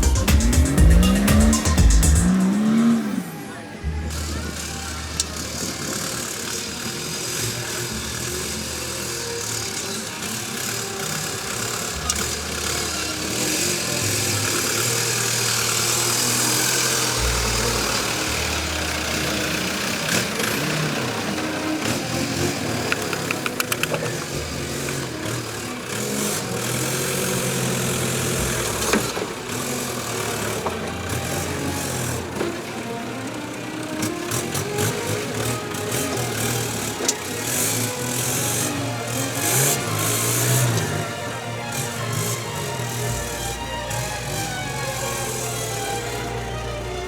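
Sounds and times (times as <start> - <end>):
engine revving unevenly: 0.0 - 47.0
quick ticks: 22.5 - 25.0.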